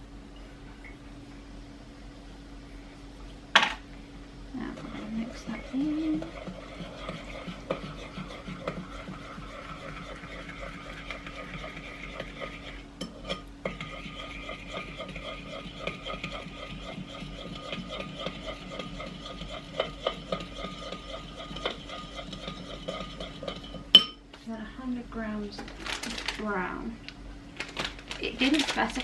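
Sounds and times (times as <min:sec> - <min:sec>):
utensil scraping mixing bowl: 0:04.6 - 0:24.0.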